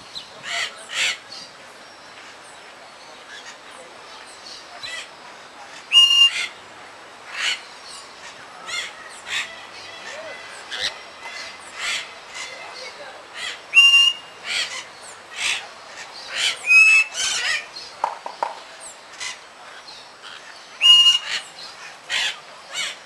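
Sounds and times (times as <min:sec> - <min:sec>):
parakeets chattering and squawking: 0:00.2 - 0:06.6, 0:07.2 - 0:23.0
pure whistled notes: 0:13.8 - 0:14.3.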